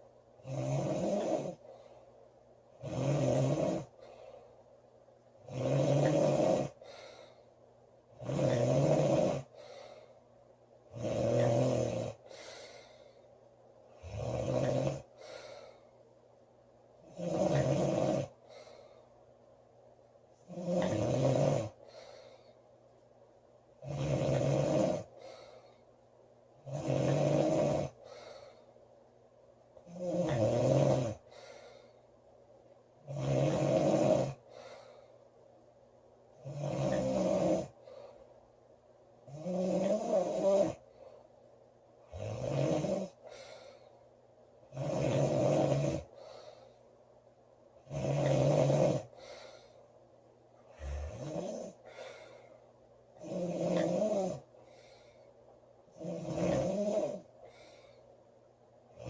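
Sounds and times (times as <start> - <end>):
woman snoring loudly: 0.4 - 1.6, 2.8 - 3.9, 5.5 - 6.8, 8.2 - 9.6, 10.9 - 12.2, 14.0 - 15.1, 17.1 - 18.4, 20.5 - 21.8, 23.8 - 25.1, 26.6 - 28.0, 29.9 - 31.2, 33.1 - 34.4, 36.4 - 37.8, 39.3 - 40.8, 42.1 - 43.2, 44.7 - 46.1, 47.8 - 49.1, 50.7 - 51.9, 53.2 - 54.5, 56.0 - 57.3.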